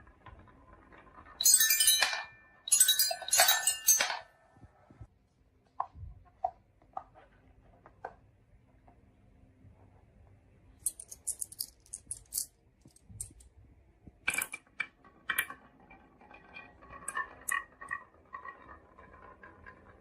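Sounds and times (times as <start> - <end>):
marbles clicking on a wooden run: 14.2 - 20.0.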